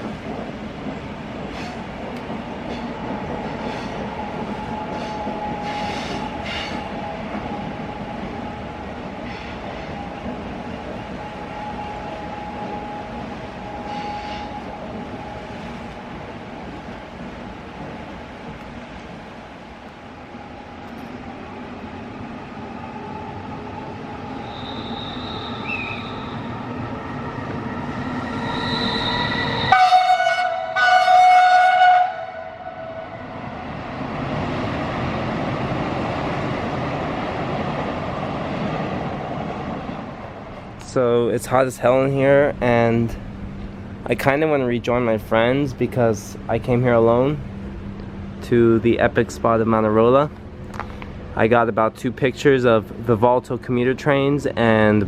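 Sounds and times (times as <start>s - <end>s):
electric train running past: 0.0s - 55.0s
train horn blasts: 11.8s - 14.7s, 24.4s - 26.5s, 28.3s - 33.4s
high thin squeal: 24.4s - 26.6s, 28.1s - 29.8s
high-pitched screeches: 27.9s - 29.9s.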